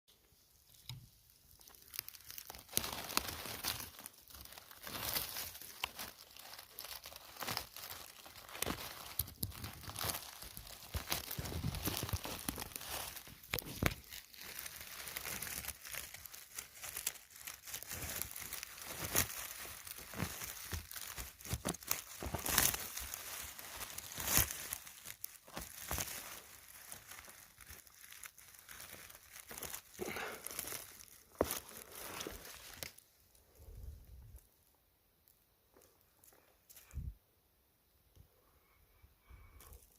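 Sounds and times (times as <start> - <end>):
twigs snapping: 0.7 - 33.0
dry leaf litter rustling: 1.5 - 33.0.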